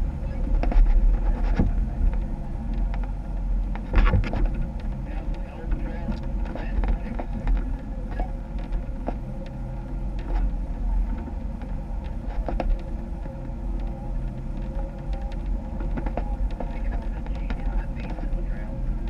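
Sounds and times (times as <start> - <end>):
engine running at low speed: 0.0 - 19.0
sharp knocks and clicks: 0.5 - 7.7.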